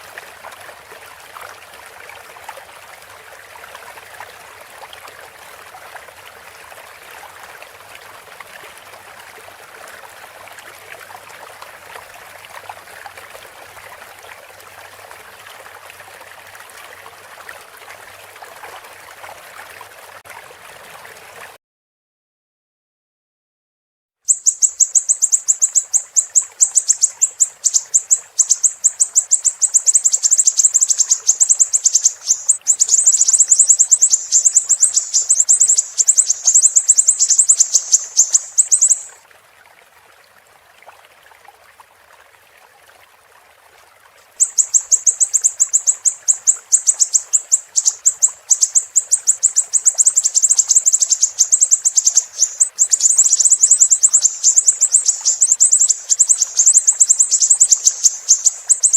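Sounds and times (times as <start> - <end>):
faint running water: 0.0 - 21.6, 24.3 - 58.9
bird chattering song: 24.3 - 39.2, 44.4 - 58.9.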